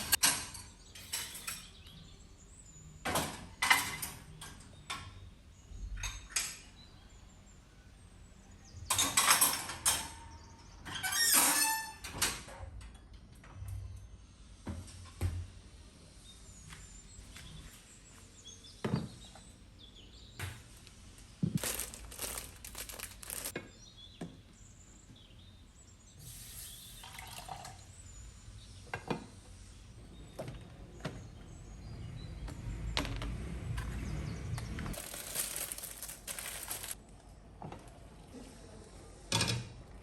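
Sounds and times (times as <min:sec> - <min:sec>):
packaging crinkling: 0:21.4 - 0:23.6, 0:34.9 - 0:37.0
water pouring: 0:27.0 - 0:27.8.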